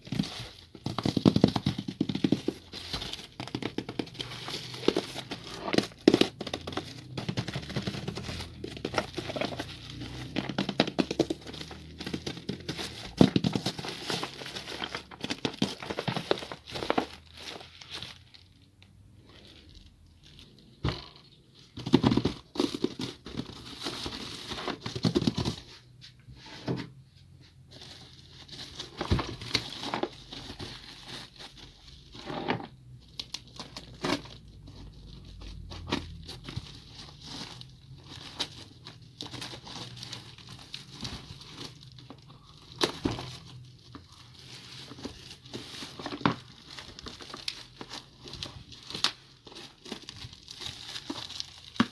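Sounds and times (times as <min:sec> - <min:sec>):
packaging tearing and crinkling: 0:00.0 - 0:18.5, 0:33.1 - 0:51.9.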